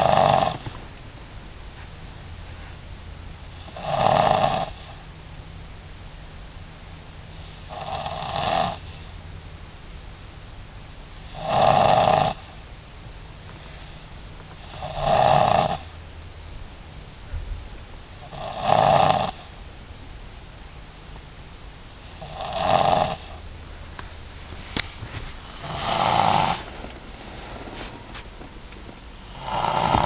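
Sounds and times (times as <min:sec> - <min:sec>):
person snoring: 0:00.0 - 0:00.6, 0:03.7 - 0:05.0, 0:18.3 - 0:19.4, 0:22.2 - 0:23.4, 0:25.5 - 0:26.7, 0:29.2 - 0:30.0.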